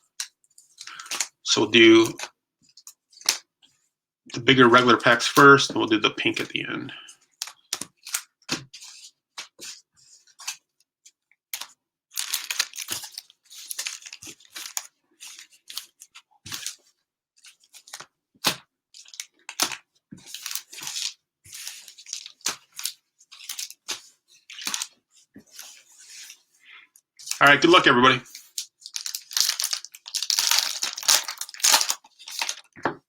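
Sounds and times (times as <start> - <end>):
plastic wrappers tearing and crinkling: 0.8 - 1.3, 12.2 - 16.8, 19.0 - 23.9, 24.5 - 24.9, 28.3 - 32.8.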